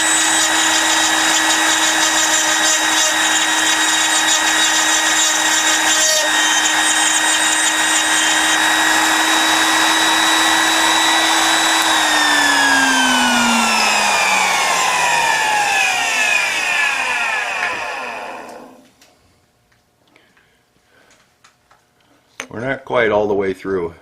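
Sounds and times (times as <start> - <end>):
drill bit grinding glass: 0.0 - 18.4
drill whining: 0.0 - 18.9.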